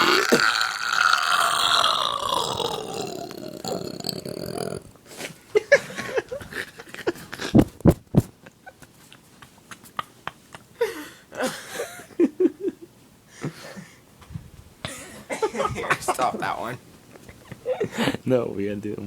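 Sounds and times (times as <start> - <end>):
breathy wheezy vocal sounds: 0.0 - 5.3.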